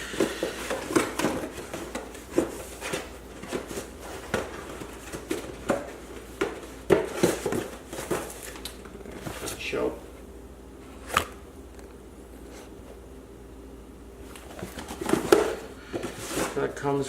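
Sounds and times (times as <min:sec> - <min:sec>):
packaging knocks taps and rustles: 0:00.1 - 0:09.5.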